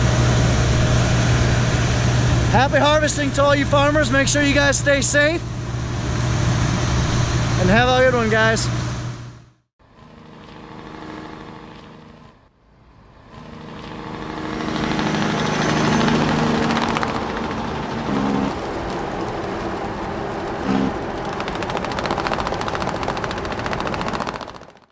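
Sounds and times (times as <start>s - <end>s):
vehicle engine clattering: 14.6s - 24.9s.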